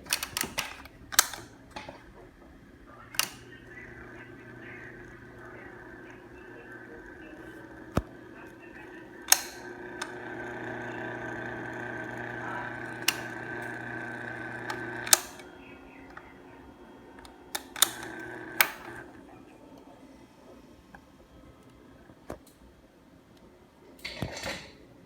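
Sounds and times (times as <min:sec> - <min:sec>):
sharp clicks: 0:00.0 - 0:01.5, 0:03.1 - 0:06.1, 0:09.3 - 0:15.5, 0:17.2 - 0:19.1
electric fan buzzing hum: 0:00.0 - 0:24.0.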